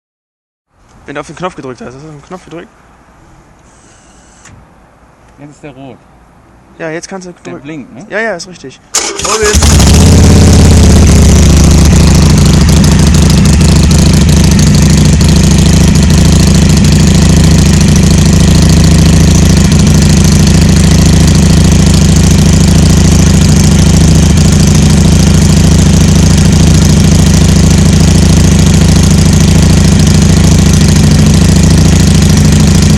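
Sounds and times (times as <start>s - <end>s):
motorcycle engine idling loudly: 9.2s - 32.9s.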